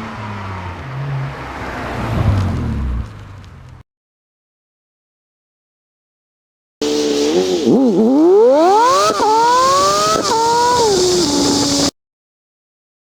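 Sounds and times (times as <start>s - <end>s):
car engine accelerating hard: 6.8s - 11.9s.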